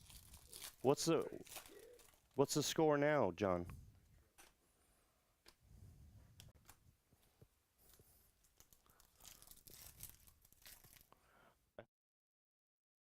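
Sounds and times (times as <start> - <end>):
wrapper tearing: 0.0 - 2.4, 8.4 - 11.2
rustling of card packs: 0.0 - 2.8, 6.4 - 11.1.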